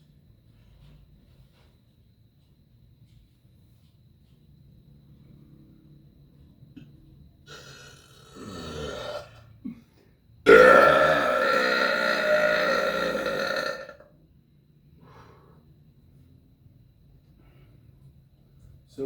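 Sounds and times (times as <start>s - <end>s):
loud forced burp: 7.5s - 9.8s, 10.4s - 14.0s
throaty sound: 7.5s - 9.8s, 10.5s - 14.0s.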